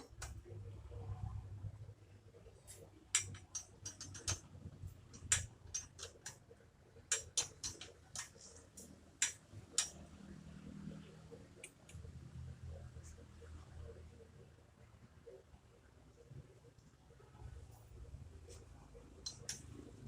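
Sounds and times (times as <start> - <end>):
faint low hum: 0.0 - 20.0
hand tools clicking and tapping: 3.1 - 4.5, 5.1 - 6.4, 7.1 - 10.0, 19.2 - 19.8.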